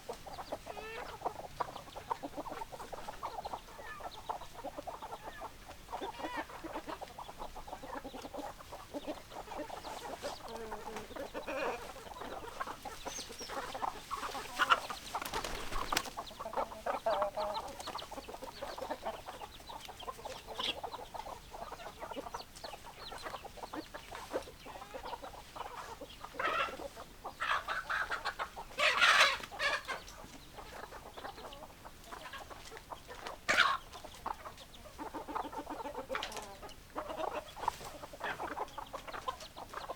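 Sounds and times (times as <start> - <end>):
chickens clucking: 0.0 - 39.9
chicken squawks: 24.2 - 30.0, 33.5 - 33.8.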